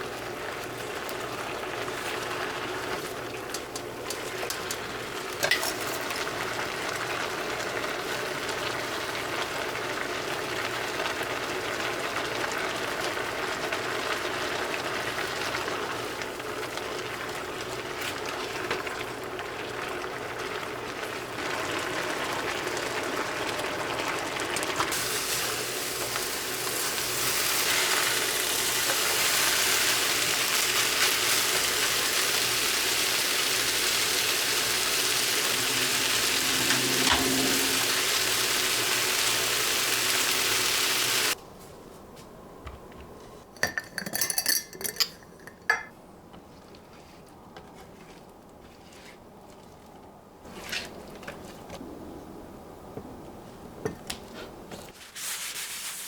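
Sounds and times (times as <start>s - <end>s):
steady kitchen hiss: 0.0s - 41.7s, 43.6s - 46.0s, 50.4s - 56.0s
dishes clinking: 5.4s - 6.3s, 43.6s - 46.0s.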